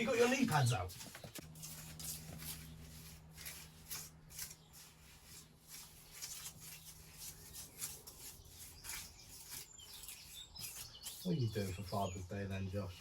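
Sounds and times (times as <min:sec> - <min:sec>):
hand tool scraping stone: 0:00.0 - 0:13.0.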